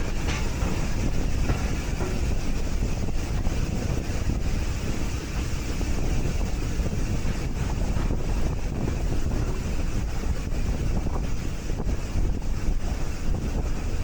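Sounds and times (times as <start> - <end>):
train rumbling: 0.0 - 14.0
wind buffeting microphone: 0.0 - 14.0.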